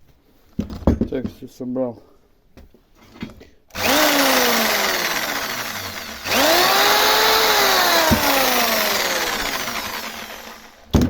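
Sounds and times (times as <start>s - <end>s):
electric jigsaw whining: 3.7s - 10.9s.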